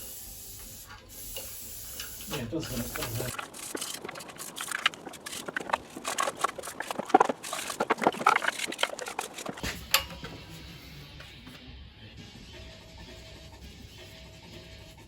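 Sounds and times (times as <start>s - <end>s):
scrubbing metal scraping: 1.8s - 11.0s.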